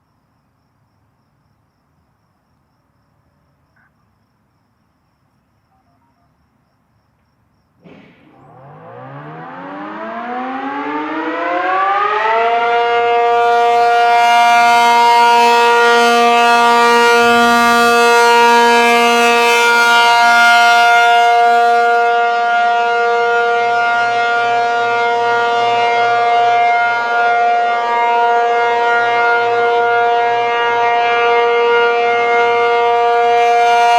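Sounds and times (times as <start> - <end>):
warning siren multi-tone wail: 8.2 - 33.9.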